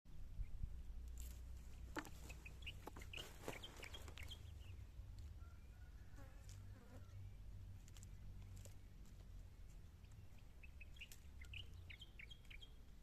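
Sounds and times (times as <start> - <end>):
birds chirping: 1.6 - 5.9, 6.9 - 13.0.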